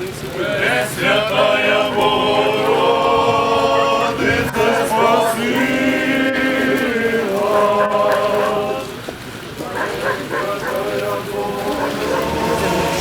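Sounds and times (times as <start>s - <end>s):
choir singing long held notes: 0.4s - 9.0s, 10.4s - 13.0s.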